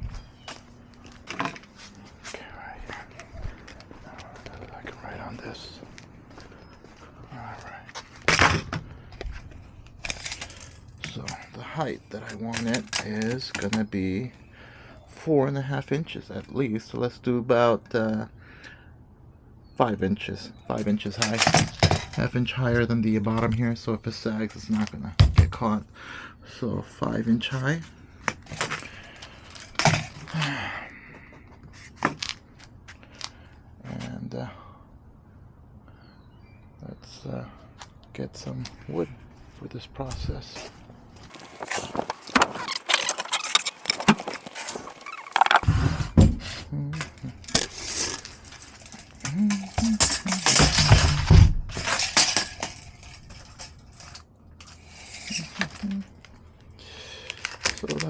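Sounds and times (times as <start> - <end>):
tools clicking and clattering: 12.2 - 13.8, 21.1 - 22.3, 28.3 - 30.4, 41.3 - 45.7, 47.0 - 56.3.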